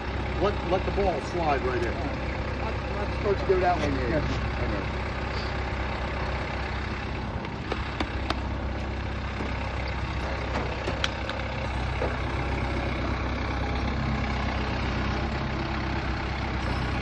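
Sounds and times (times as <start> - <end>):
heavy machine engine running: 0.0 - 17.0
sharp clicks and knocks: 7.4 - 8.6, 9.3 - 12.2.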